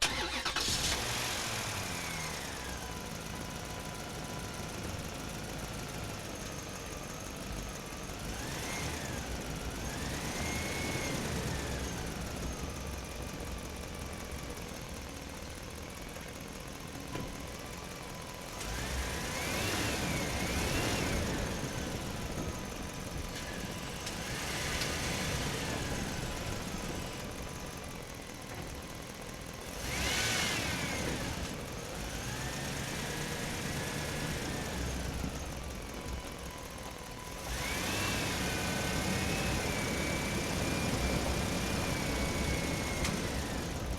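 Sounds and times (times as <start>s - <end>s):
truck engine revving: 0.0s - 3.0s, 18.6s - 27.7s, 29.7s - 36.2s, 37.3s - 43.9s.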